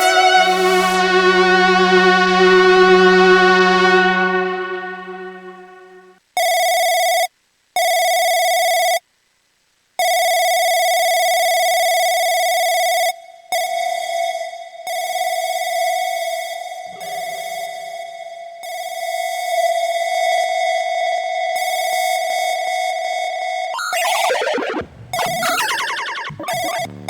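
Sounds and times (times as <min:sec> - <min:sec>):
high bright synth note: 0:00.0 - 0:06.1, 0:23.8 - 0:27.0
lower synth note: 0:00.0 - 0:06.2, 0:23.8 - 0:27.0.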